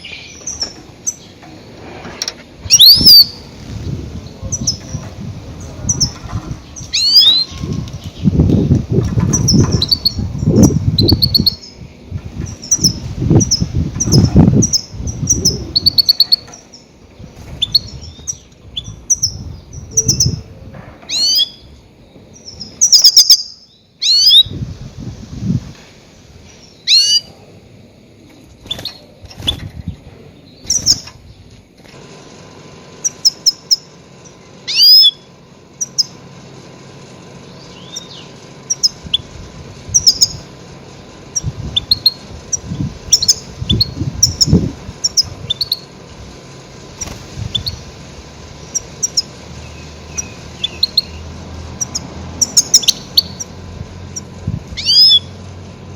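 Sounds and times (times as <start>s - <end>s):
low rumbling bursts: 2.5s - 16.1s, 33.9s - 55.9s
goldfinch chirps: 2.7s - 3.5s, 4.3s - 8.4s, 9.2s - 11.8s, 12.4s - 16.9s, 22.3s - 24.5s, 26.6s - 27.3s, 33.0s - 36.2s, 37.4s - 40.5s, 41.3s - 46.0s, 46.8s - 55.4s.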